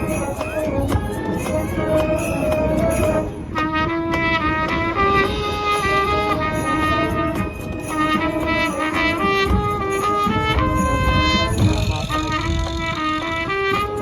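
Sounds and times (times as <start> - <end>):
marching band percussion: 0.0 - 14.0
trumpets playing held notes: 0.0 - 14.0.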